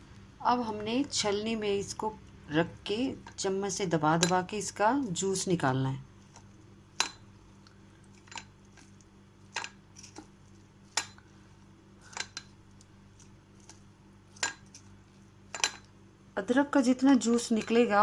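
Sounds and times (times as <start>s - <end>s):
spoon clinking against strainer: 17.3s - 17.9s.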